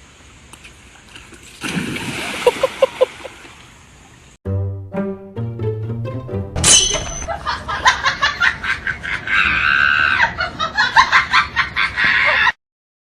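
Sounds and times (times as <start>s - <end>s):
shrill laughing and shrieking: 9.0s - 10.5s, 11.8s - 12.6s.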